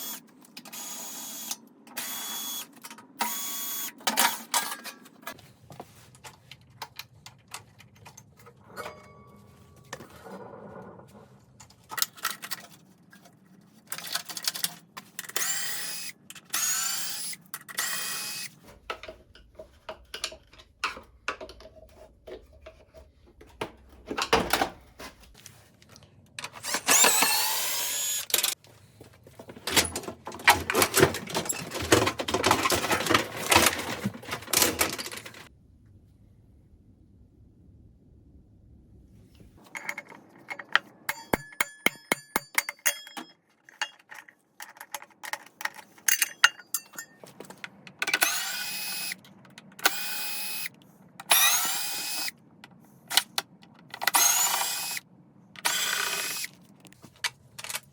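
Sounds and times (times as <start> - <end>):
tools and metal parts clicking: 0.0 - 5.4, 11.6 - 22.8, 26.4 - 28.6, 29.5 - 35.5, 39.6 - 55.0
cordless drill whining: 0.8 - 2.6, 26.8 - 28.5, 48.2 - 49.2, 49.8 - 52.3, 54.0 - 55.0, 55.6 - 56.5.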